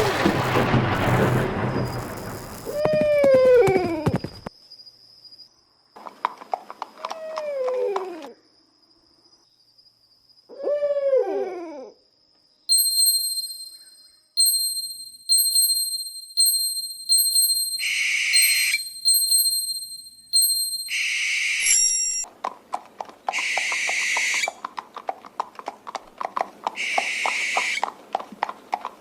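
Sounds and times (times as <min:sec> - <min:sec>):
bright bell chiming: 0:12.7 - 0:21.0
owl hooting: 0:17.8 - 0:18.8, 0:20.9 - 0:22.2, 0:23.3 - 0:24.6, 0:26.8 - 0:27.8.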